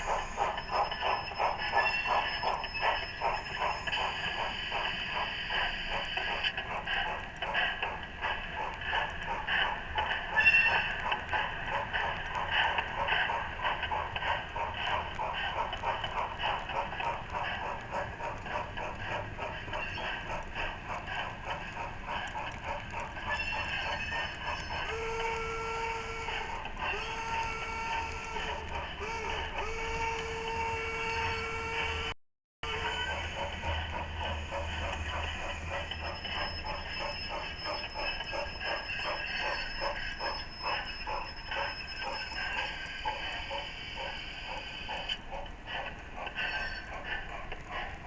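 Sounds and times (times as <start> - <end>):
steam locomotive chuffing: 0.0 - 48.0
steam whistle blasts: 23.9 - 33.3.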